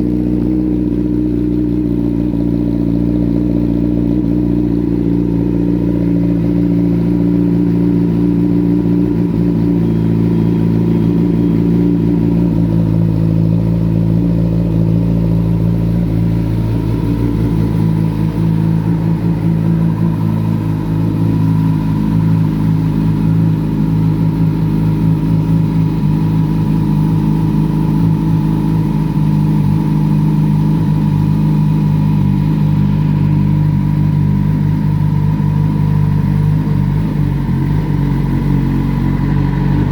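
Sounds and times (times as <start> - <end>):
motorcycle engine idling: 0.0 - 39.9.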